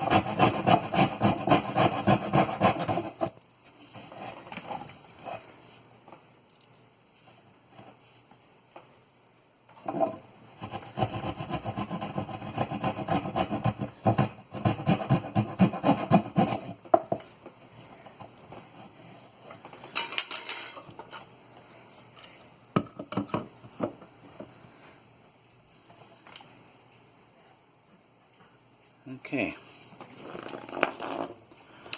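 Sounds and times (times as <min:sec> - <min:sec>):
hand saw cutting wood: 0:00.0 - 0:03.3, 0:10.6 - 0:16.8
short rasp: 0:00.0 - 0:03.3.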